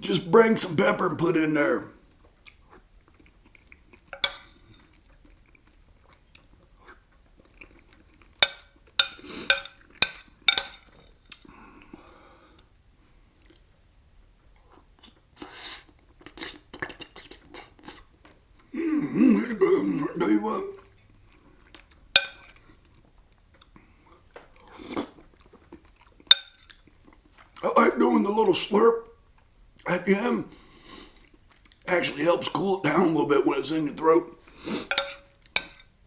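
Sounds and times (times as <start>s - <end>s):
man chewing: 2.1s - 12.6s, 13.3s - 13.8s, 14.5s - 27.6s, 29.3s - 33.1s.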